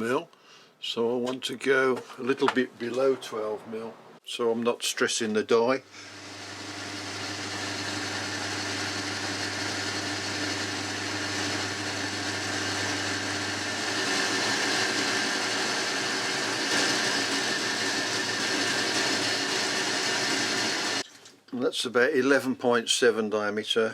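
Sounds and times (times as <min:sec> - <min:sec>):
lathe cutting hiss: 0:05.9 - 0:21.0
lathe motor hum: 0:06.0 - 0:21.0.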